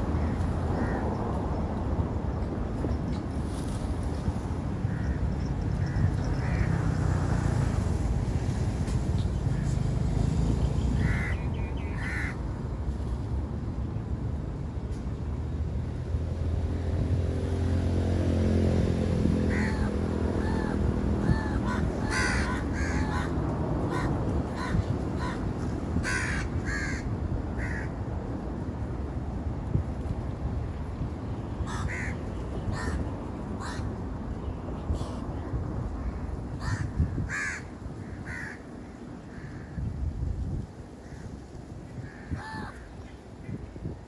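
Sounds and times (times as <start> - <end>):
crows cawing: 0.2 - 1.1, 4.9 - 6.8, 11.0 - 12.4, 19.5 - 28.0, 31.7 - 33.0, 33.6 - 33.9, 36.6 - 39.8, 42.0 - 42.9.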